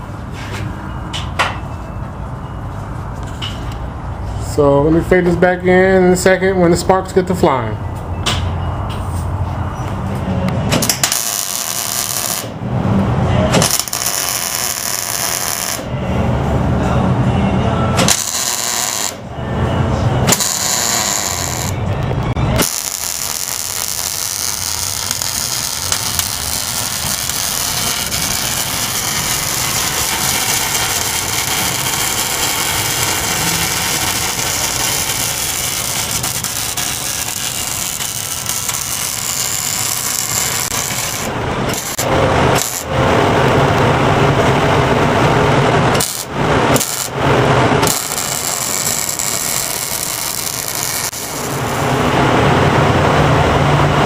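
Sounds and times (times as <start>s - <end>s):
arc welding crackling hiss: 10.8s - 12.6s, 13.6s - 15.9s, 18.0s - 19.2s, 20.3s - 21.8s, 22.6s - 43.0s, 46.0s - 47.2s, 47.8s - 52.0s.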